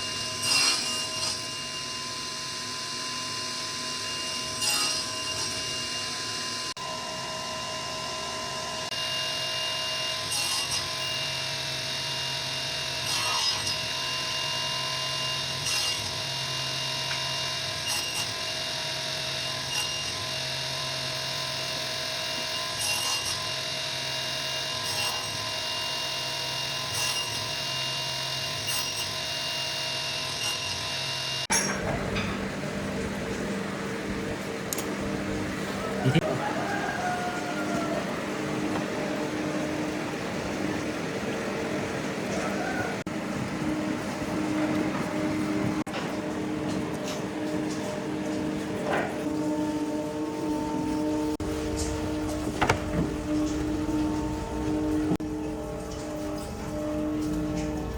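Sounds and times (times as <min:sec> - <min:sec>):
power tool cutting wood: 0:00.0 - 0:31.6.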